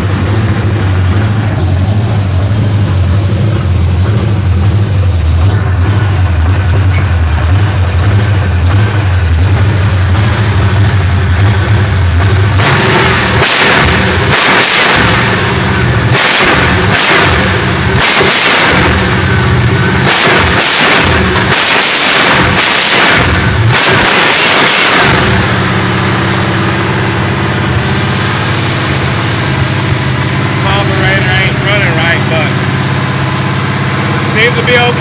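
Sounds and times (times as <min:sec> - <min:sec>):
engine revving in throttle blips: 0:00.0 - 0:35.0.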